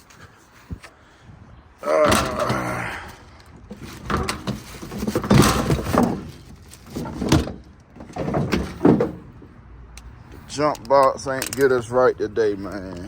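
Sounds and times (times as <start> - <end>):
car door clunks and creaks: 3.5 - 9.5.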